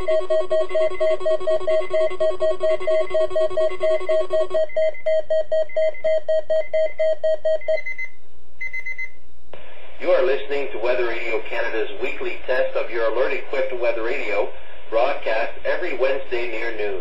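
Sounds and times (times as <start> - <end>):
rapid electronic beeping: 0.0 - 8.1
steady warning tone: 0.0 - 9.0.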